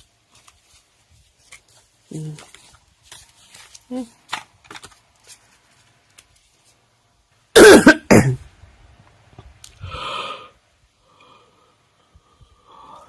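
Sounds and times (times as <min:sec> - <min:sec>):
person coughing: 0:07.6 - 0:08.4
breathy exhale: 0:09.8 - 0:13.0.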